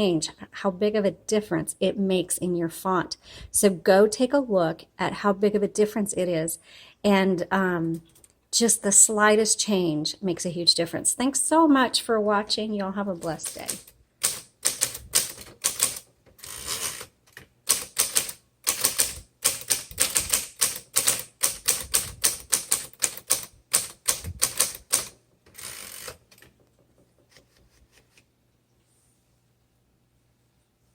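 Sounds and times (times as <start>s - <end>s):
manual typewriter keystrokes: 13.2s - 26.8s.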